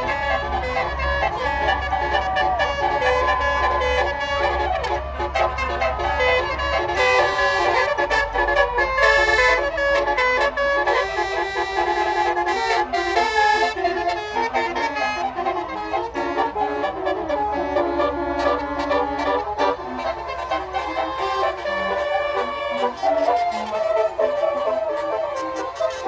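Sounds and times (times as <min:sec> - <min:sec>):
bus engine rumble: 0:00.0 - 0:26.0
musical air horn melody: 0:00.0 - 0:26.0.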